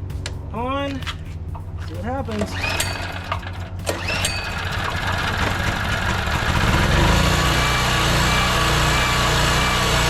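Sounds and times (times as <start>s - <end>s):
generator engine starting and running: 1.5s - 10.0s.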